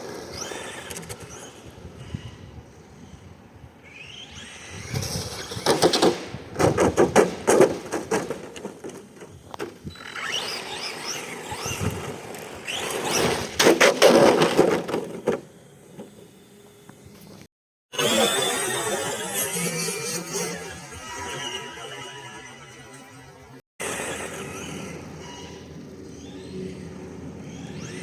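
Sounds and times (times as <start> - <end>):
electric motor whining: 18.0 - 28.0.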